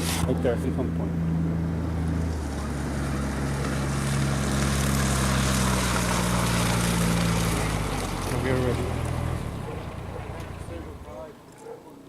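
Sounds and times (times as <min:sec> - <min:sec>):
rushing wind or tyres: 0:00.0 - 0:11.3
truck engine running: 0:00.0 - 0:11.7.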